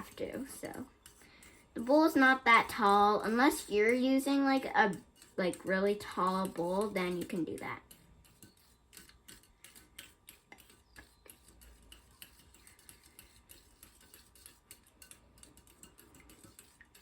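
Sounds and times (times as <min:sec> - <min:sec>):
utensil tapping against a bowl: 0:04.9 - 0:17.0.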